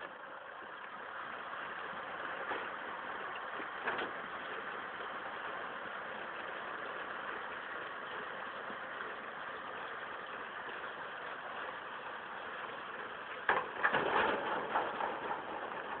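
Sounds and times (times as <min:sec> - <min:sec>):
tractor and baler running: 0:00.0 - 0:16.0
irregular clunks and rattles: 0:02.0 - 0:09.1, 0:12.9 - 0:16.0.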